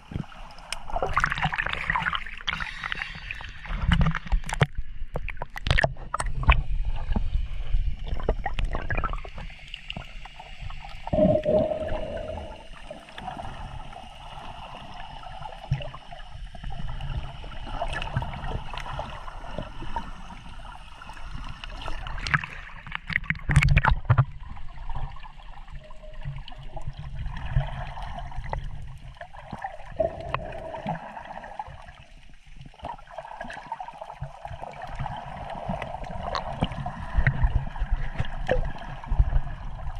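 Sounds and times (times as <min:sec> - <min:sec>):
underwater gurgling and sloshing: 0:00.0 - 0:39.9
low rumble: 0:11.1 - 0:13.1.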